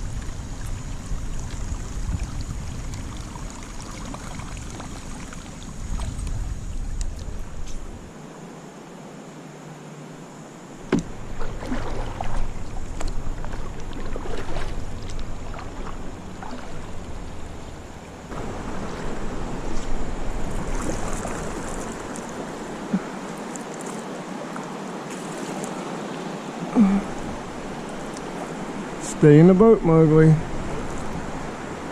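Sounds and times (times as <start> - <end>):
low wind rumble on microphone: 0.0 - 8.2, 10.8 - 23.3, 26.7 - 31.9
water moving around a canoe: 0.0 - 8.6, 10.0 - 31.9
light knocks and splashes: 10.8 - 17.4.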